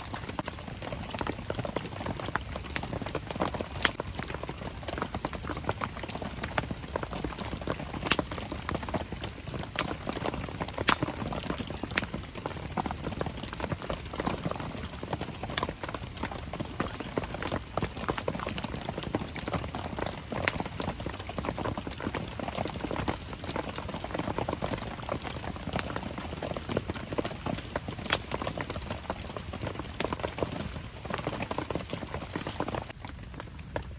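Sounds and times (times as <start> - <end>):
campfire crackling and popping: 0.0 - 33.9
rain pattering: 0.0 - 33.9.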